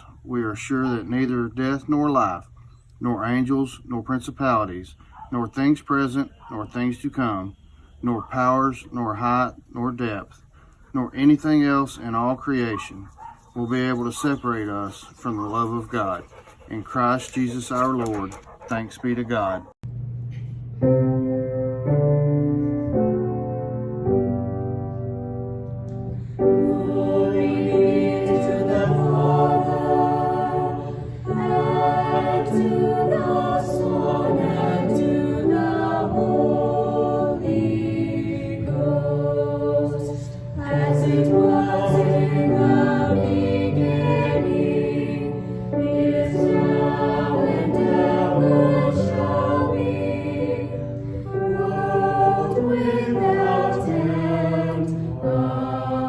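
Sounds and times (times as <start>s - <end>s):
choir singing a hymn: 26.0s - 56.0s.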